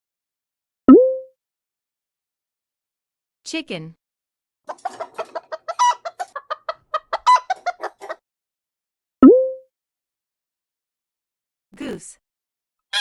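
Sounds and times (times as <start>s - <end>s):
cartoon pop with rising pitch: 0.9s - 1.3s, 9.2s - 9.6s
chicken clucking: 4.7s - 8.2s.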